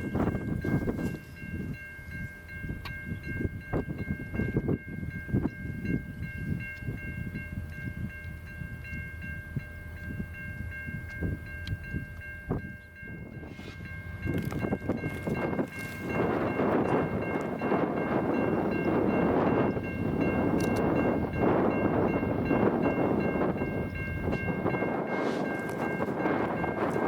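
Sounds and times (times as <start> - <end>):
freight train passing: 0.0 - 27.0
wind gusting on microphone: 0.0 - 27.0
high-pitched multi-tone ring: 10.1 - 27.0.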